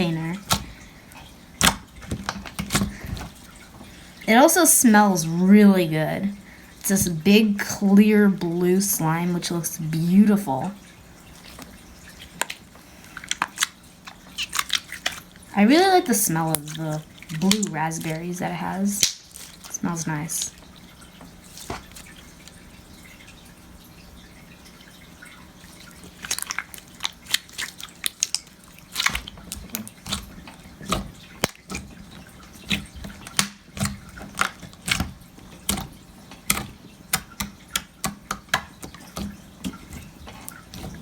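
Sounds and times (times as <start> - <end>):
slime squelching with wet pops: 0.0 - 3.9, 11.4 - 22.7, 25.8 - 41.0.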